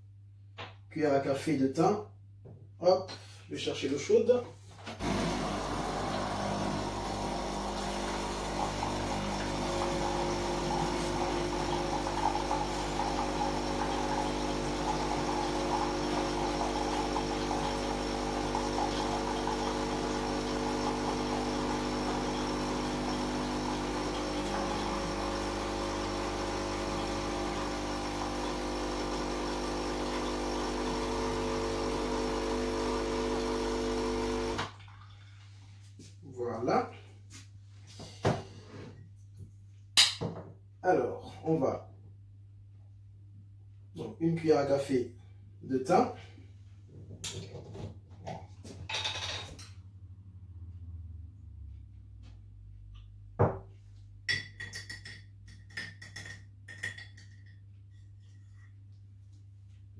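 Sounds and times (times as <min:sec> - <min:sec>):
appliance electrical hum and whir: 0:03.6 - 0:35.2.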